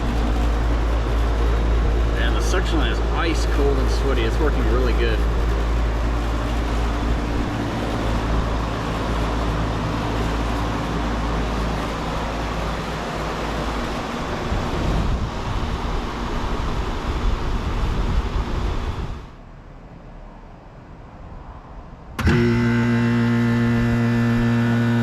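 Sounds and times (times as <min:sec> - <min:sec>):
air conditioner compressor hum: 0:00.0 - 0:25.0
condenser fan rushing: 0:00.0 - 0:25.0.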